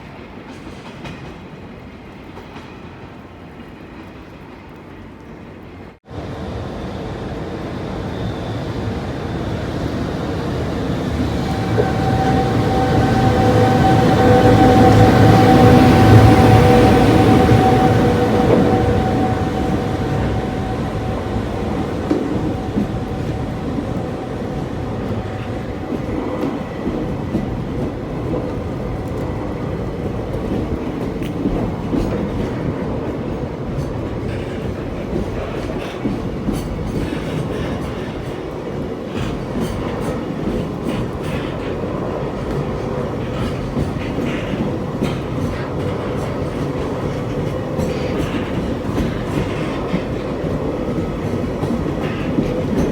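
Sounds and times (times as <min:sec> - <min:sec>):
freight train passing: 0:00.0 - 0:52.9
wheels clicking on rail joints: 0:08.5 - 0:52.9.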